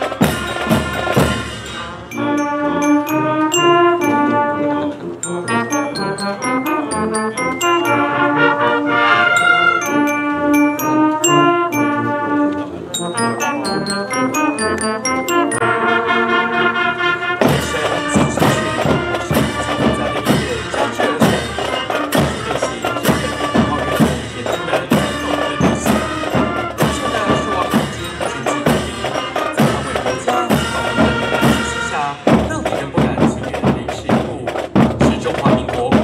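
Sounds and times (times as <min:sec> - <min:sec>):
rapid snare drum line: 0:00.0 - 0:01.9, 0:17.4 - 0:36.0
brass holding a chord: 0:00.2 - 0:32.2.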